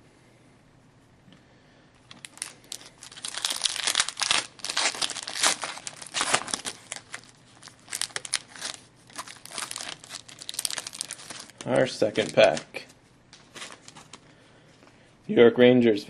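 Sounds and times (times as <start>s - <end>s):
foil wrapper tearing and crinkling: 2.1s - 12.9s.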